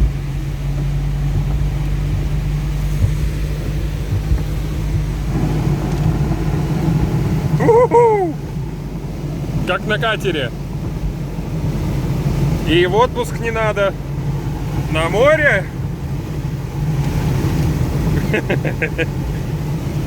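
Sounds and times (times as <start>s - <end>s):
car driving through water: 0.0s - 20.0s
car engine rumbling: 0.0s - 20.0s
heavy rain: 0.0s - 20.0s
vocal exclamation: 7.5s - 8.5s.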